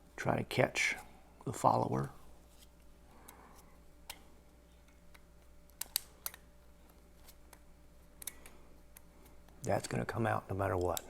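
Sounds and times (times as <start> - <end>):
small sharp plastic clicks: 4.0 - 6.5.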